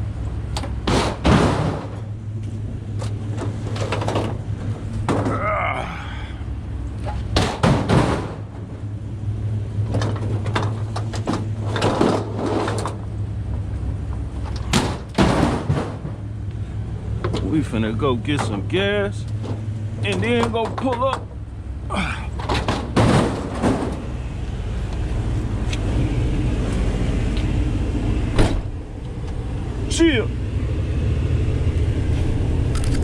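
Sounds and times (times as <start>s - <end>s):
steady low hum: 0.0s - 33.0s
scrap metal clanking in truck bed: 0.6s - 2.2s, 2.9s - 5.6s, 7.0s - 9.0s, 9.8s - 17.6s, 18.2s - 21.4s, 22.0s - 24.4s.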